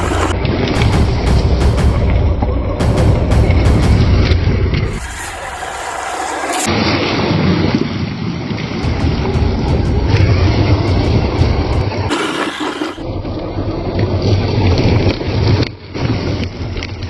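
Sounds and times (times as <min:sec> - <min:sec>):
rc car motor and tyres rumbling: 0:00.0 - 0:00.4, 0:04.8 - 0:06.7, 0:12.1 - 0:17.0.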